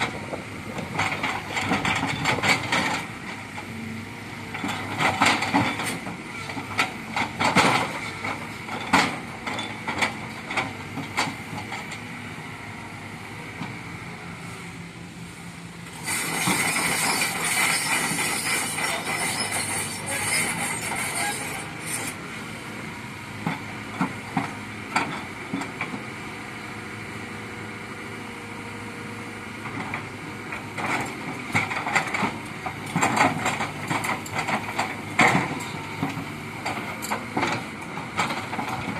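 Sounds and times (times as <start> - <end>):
excavator engine humming: 0.0 - 38.9.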